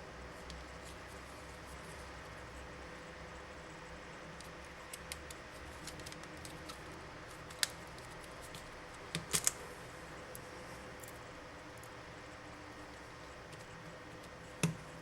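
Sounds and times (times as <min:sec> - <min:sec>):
plastic phone parts clicking: 0:09.2 - 0:09.6.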